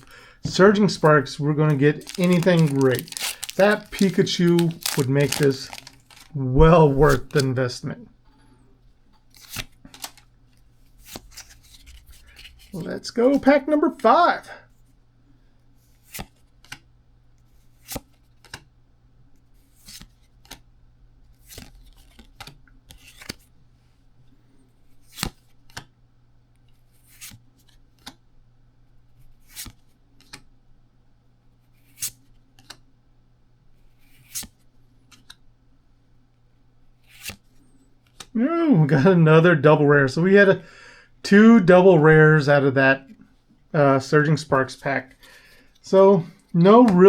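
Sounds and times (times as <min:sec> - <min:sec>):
trading cards snapping: 0:01.7 - 0:06.4.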